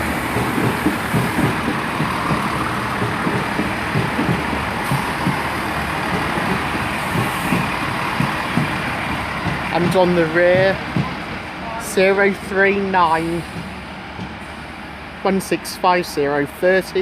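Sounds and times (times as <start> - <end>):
train wheels knocking on track: 0.0 - 14.5
diesel engine rumble: 0.0 - 15.2.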